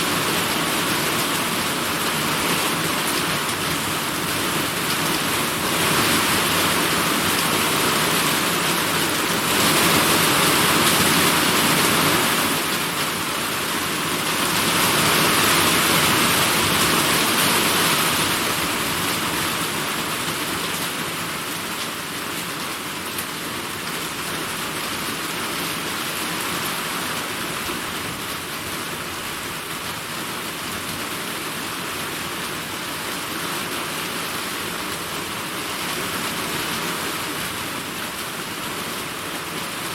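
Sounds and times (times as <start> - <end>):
heavy rain downpour: 0.0 - 39.9.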